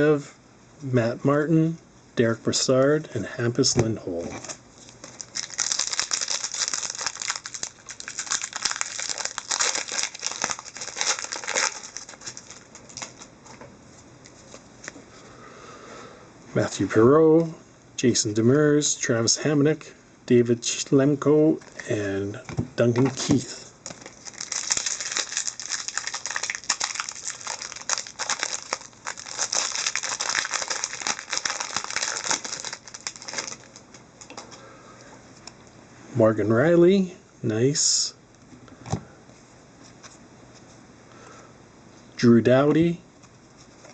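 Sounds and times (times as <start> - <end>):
wrapper crinkling and tearing: 4.4 - 13.3, 23.8 - 34.5.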